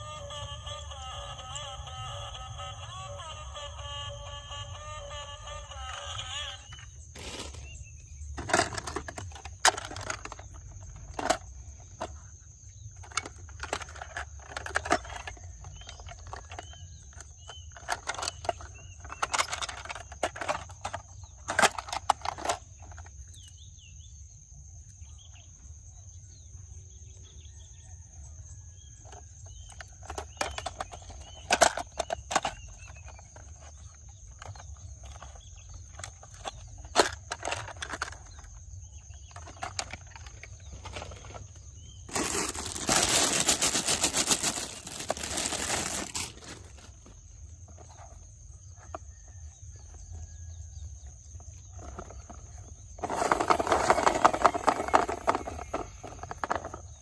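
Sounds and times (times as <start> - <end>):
plastic toy cars clattering: 0.0 - 23.7, 28.8 - 57.0
faint bird chirps: 22.8 - 57.0.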